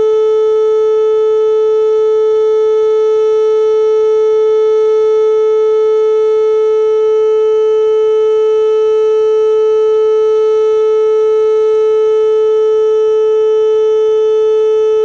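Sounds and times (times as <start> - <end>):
warning siren steady tone: 0.0 - 15.0.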